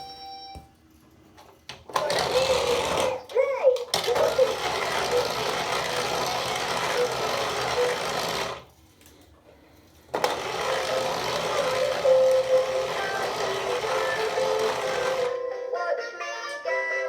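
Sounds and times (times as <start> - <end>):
toy car motor whirring: 1.9 - 8.7, 10.2 - 15.4.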